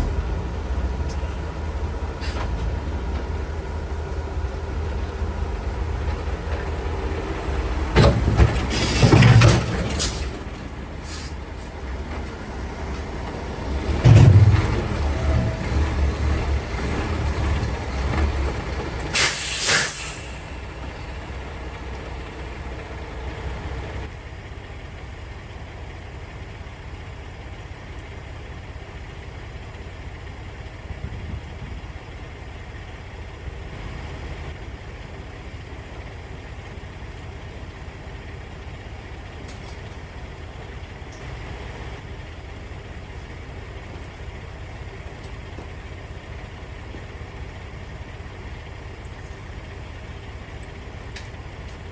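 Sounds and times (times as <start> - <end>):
diesel truck engine running: 0.0 - 51.9
air brake hiss: 11.0 - 11.4, 19.1 - 21.4.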